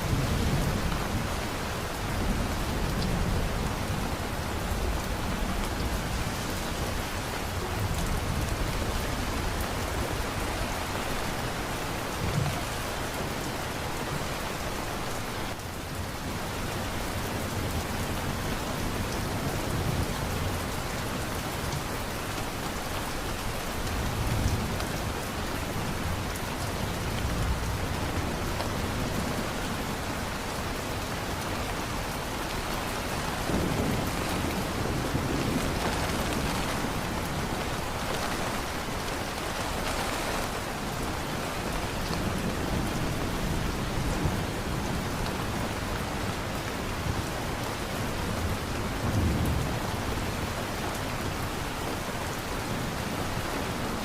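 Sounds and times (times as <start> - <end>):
heavy rain: 0.0 - 54.0
thunder rumbling: 32.8 - 45.1.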